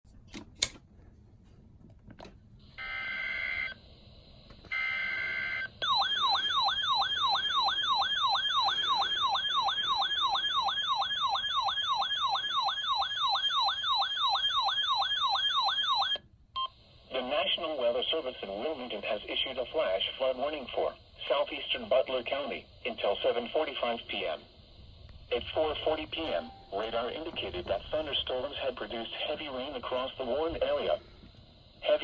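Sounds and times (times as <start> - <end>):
warbling alert siren: 2.8 - 3.8, 4.7 - 16.2, 23.8 - 31.8.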